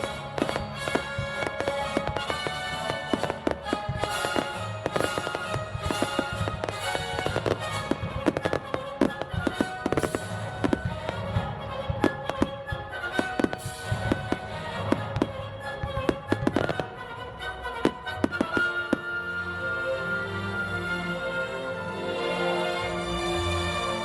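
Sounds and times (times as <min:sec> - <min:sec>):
fireworks bursting and crackling: 0:00.0 - 0:17.0
music playing: 0:00.0 - 0:24.0.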